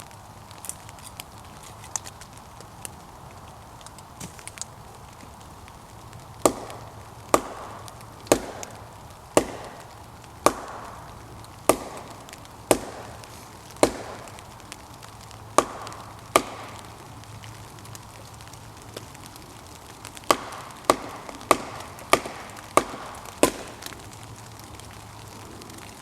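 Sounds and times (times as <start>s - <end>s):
blows splitting wood: 6.0s - 26.0s.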